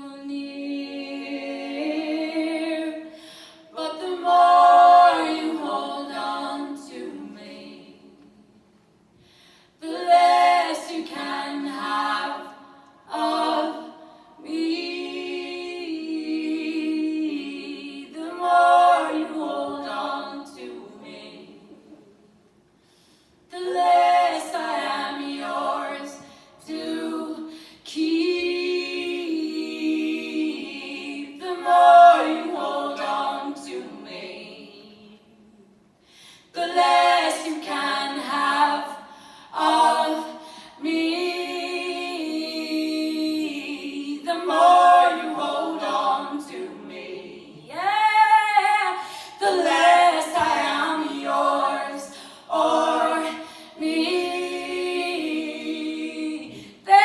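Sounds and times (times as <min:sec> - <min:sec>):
a cappella group singing: 0:00.0 - 0:08.7, 0:09.6 - 0:57.0.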